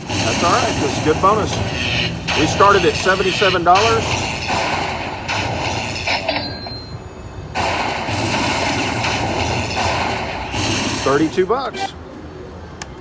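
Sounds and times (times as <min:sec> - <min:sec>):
slot machine sounds: 0:00.3 - 0:07.0.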